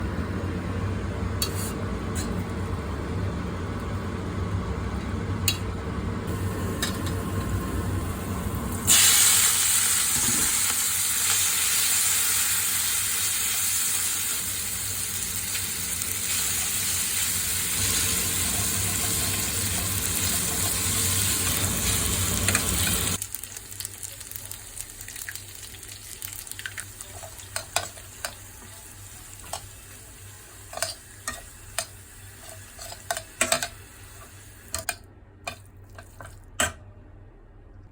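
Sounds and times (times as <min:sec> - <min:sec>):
food sizzling in a hot pan: 0:06.3 - 0:34.8.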